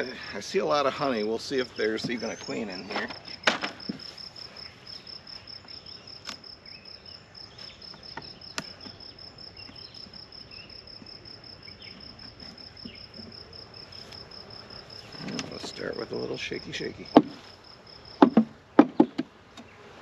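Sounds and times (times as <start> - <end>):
insect chirping: 0.0 - 20.0
sharp knocks: 17.1 - 17.4, 18.2 - 19.3.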